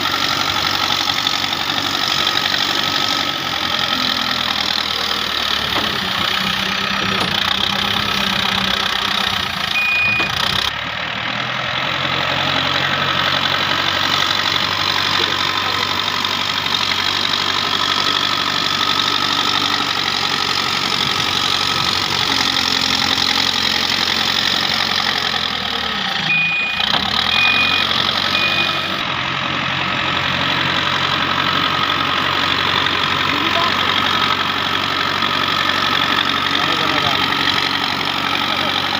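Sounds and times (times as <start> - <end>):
heavy diesel engine idling: 0.0 - 38.9
short high beeps: 9.8 - 10.3, 26.3 - 29.0.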